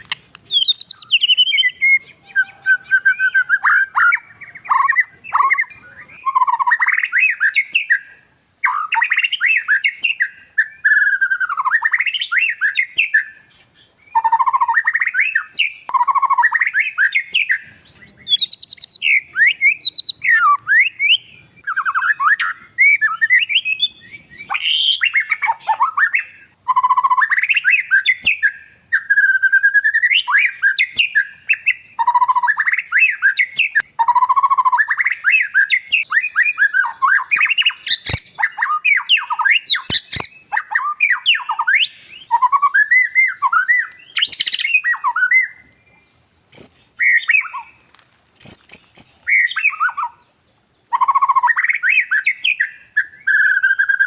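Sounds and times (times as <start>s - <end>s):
sharp clicks: 0.0s - 0.5s, 37.9s - 38.3s, 39.8s - 40.4s
songbird whistling and chattering: 0.0s - 45.8s, 46.5s - 47.8s, 48.4s - 50.2s, 50.9s - 54.0s.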